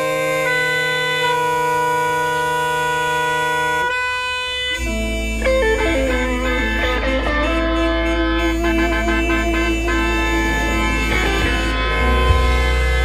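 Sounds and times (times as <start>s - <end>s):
car horns sounding in a chord: 0.0s - 13.0s
deep low hum: 4.8s - 13.0s.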